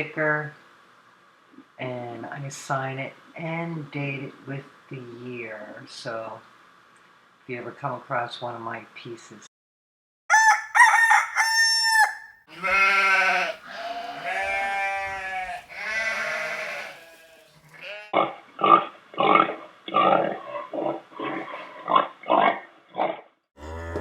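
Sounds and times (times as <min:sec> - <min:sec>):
rooster crowing: 0:10.3 - 0:17.3
sheep bleating: 0:12.5 - 0:18.2
pig grunting: 0:12.6 - 0:24.0.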